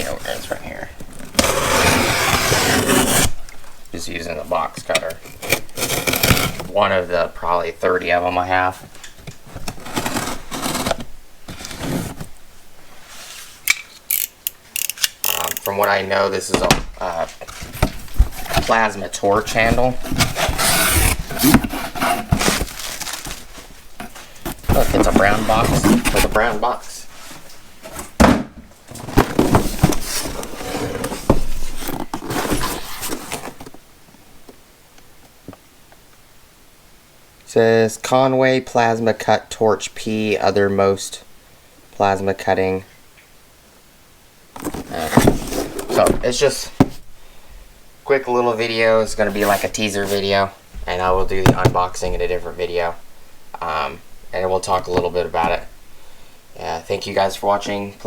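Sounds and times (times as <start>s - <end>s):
cardboard scraping and rustling: 0.0s - 3.4s, 4.6s - 7.5s, 8.6s - 13.6s, 16.5s - 33.8s, 44.6s - 47.1s, 48.5s - 52.4s
box cutter slicing packing tape: 5.4s - 6.6s, 20.1s - 22.8s.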